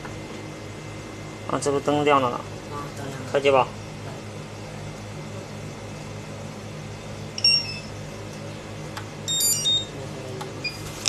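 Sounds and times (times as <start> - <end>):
low machine hum: 0.0 - 11.0
electronic beeps: 7.4 - 7.9, 9.3 - 9.9.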